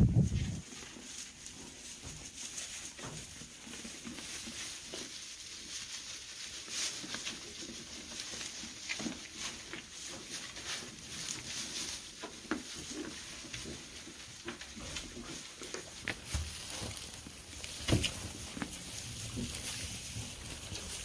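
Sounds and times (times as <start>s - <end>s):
low rumble: 0.0s - 0.6s
faint ticks and rustling: 0.3s - 21.0s.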